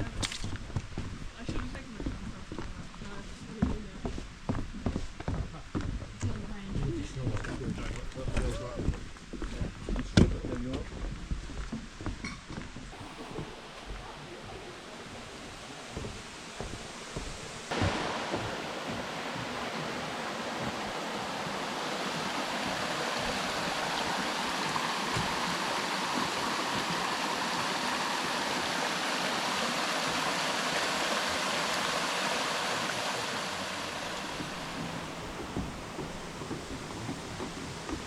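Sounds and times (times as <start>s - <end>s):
stream water rushing: 12.9s - 38.0s.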